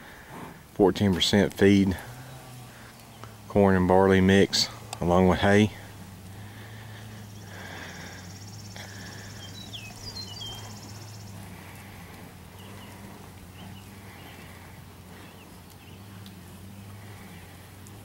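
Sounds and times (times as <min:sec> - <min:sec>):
steady low hum: 0:00.0 - 0:18.0
bird chirps: 0:06.8 - 0:17.4.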